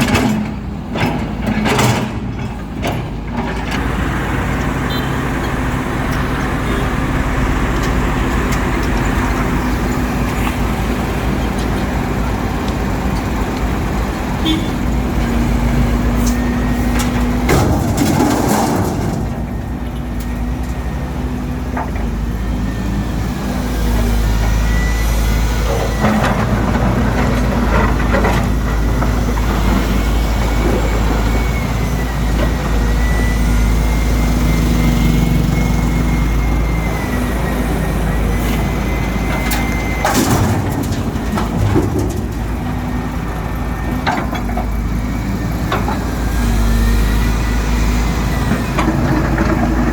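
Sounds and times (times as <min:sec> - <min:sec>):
excavator diesel engine: 0:00.0 - 0:49.9
asphalt cracking and scraping: 0:15.9 - 0:20.3.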